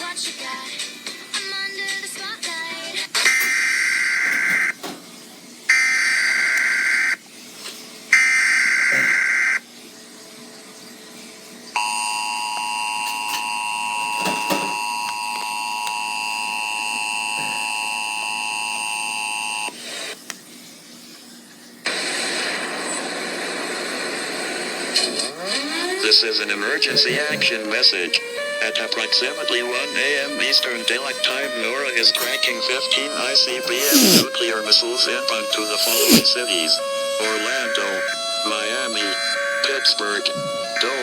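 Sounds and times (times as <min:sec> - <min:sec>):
hiss: 0:33.7 - 0:34.3, 0:35.8 - 0:36.2.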